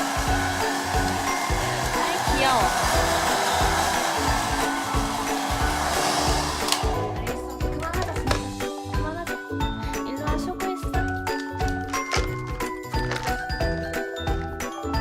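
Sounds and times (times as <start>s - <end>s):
hair dryer blowing: 0.0s - 8.6s
background music: 0.0s - 15.0s.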